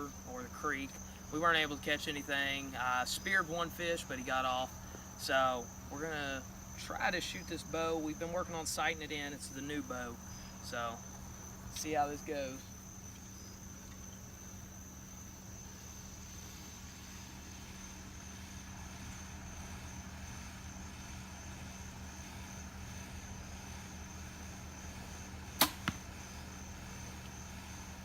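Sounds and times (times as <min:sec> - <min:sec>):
high insect tone: 0:00.0 - 0:28.0
bowstring snap: 0:25.5 - 0:26.1
arrow hitting target: 0:25.6 - 0:26.1.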